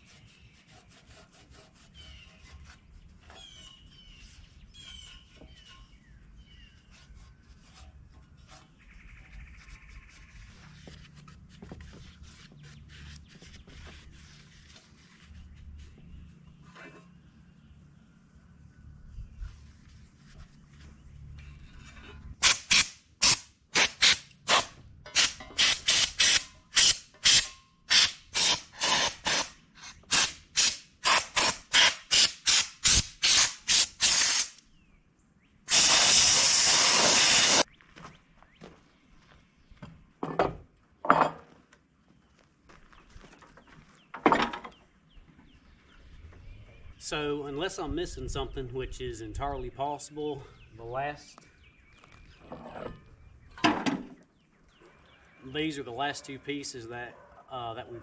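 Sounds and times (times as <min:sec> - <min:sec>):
pressurised spray hissing: 0:30.1 - 0:34.5, 0:35.7 - 0:37.6.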